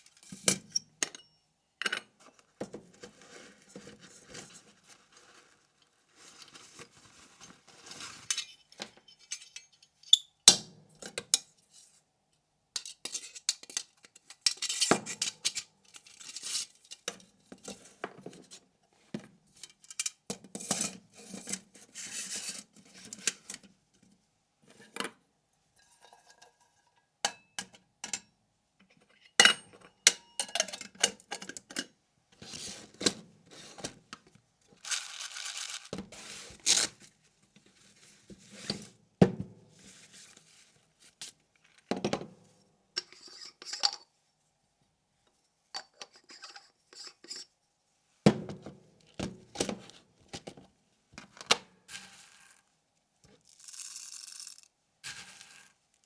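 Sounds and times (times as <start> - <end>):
rustling and scraping: 2.8 - 9.6, 34.8 - 38.9.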